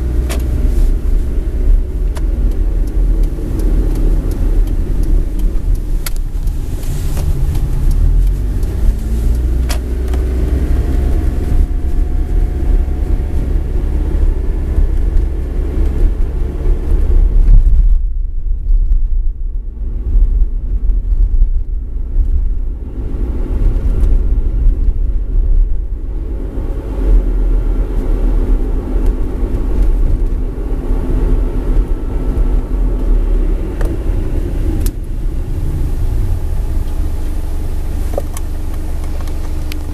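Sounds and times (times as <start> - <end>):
wheel bearing rumble: 0.0 - 19.5
road noise: 0.0 - 39.9.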